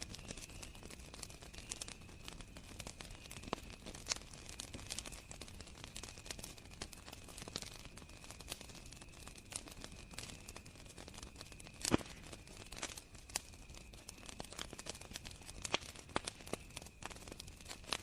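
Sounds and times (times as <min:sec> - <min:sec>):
campfire crackling and popping: 0:00.0 - 0:18.0
crickets chirring: 0:00.0 - 0:18.0.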